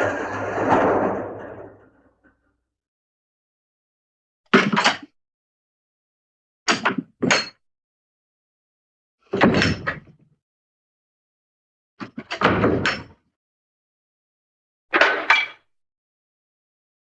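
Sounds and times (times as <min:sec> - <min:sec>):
cartoon bangs and clatters: 0:00.0 - 0:02.2.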